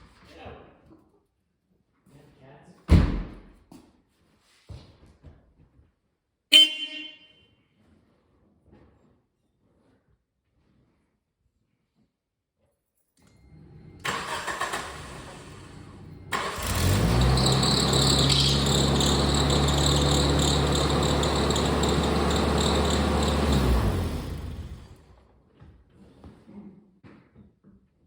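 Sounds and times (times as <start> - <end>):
car engine cranking and running: 13.7 - 25.3
high-pitched alternator squeal: 16.4 - 24.9.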